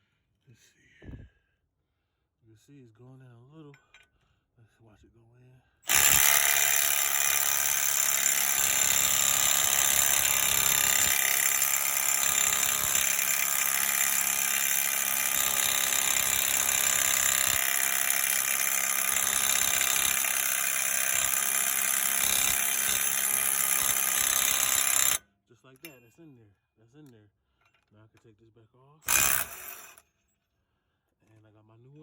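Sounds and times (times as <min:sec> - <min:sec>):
impact driver hammering: 0:05.9 - 0:25.2, 0:29.1 - 0:30.0.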